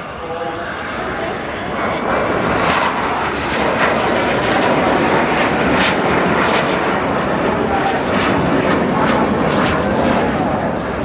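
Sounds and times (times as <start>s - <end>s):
aircraft engine passing overhead: 0.0s - 11.0s.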